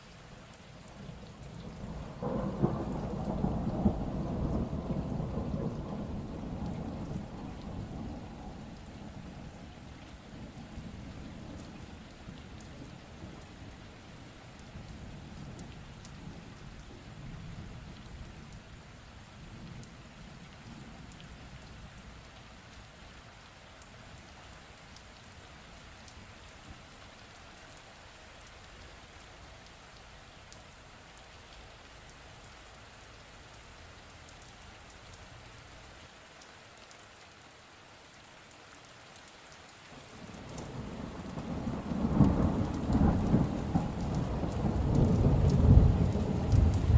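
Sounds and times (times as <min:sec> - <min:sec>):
steady rain falling: 0:00.0 - 0:46.9
thunder rumbling: 0:01.8 - 0:09.4, 0:40.5 - 0:46.9.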